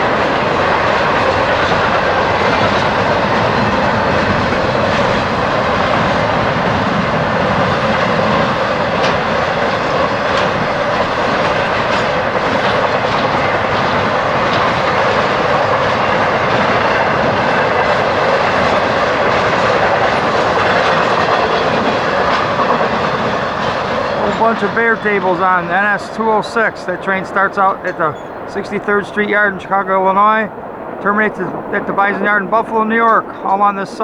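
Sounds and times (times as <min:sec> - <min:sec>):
freight train rumbling past: 0:00.0 - 0:34.0
wheels clicking over rail joints: 0:00.0 - 0:34.0.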